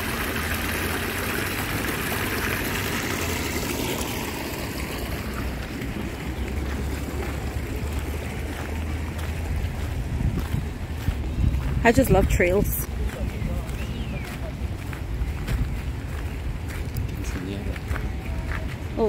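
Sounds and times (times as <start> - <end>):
running water rushing: 0.0 - 19.0
wind rumbling on microphone: 5.0 - 19.0.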